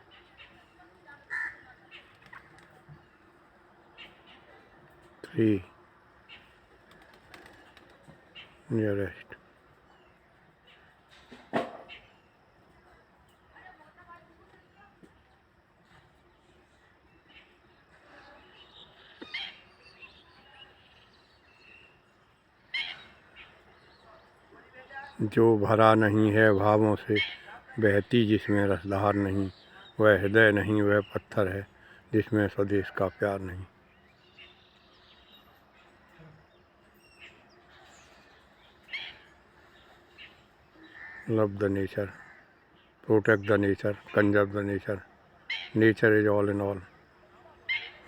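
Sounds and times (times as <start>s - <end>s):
faint background bird chirping: 0.0s - 48.0s
steady outdoor hiss: 0.0s - 48.0s
sharp high-pitched bird calls: 47.6s - 48.0s.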